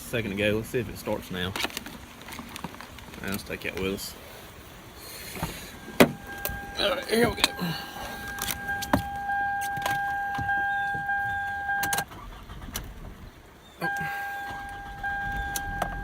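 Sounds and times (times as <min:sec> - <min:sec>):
car electronic warning tone: 0:05.4 - 0:12.0, 0:13.8 - 0:16.0.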